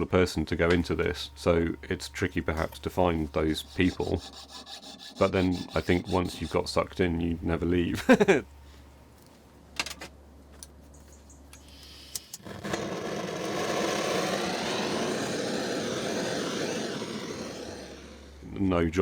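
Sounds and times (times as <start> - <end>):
workshop machine running: 12.4 - 18.5.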